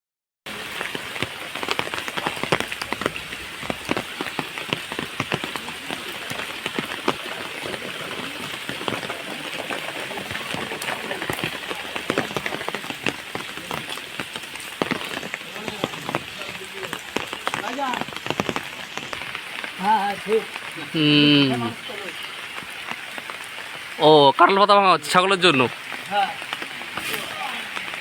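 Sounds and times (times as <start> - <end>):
rain falling: 0.5 - 28.0.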